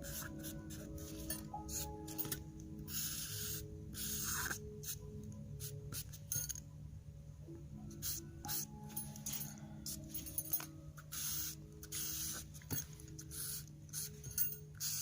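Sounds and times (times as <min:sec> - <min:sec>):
pen scratching on paper: 0:00.0 - 0:05.0, 0:11.0 - 0:15.0
soft background music: 0:00.0 - 0:15.0.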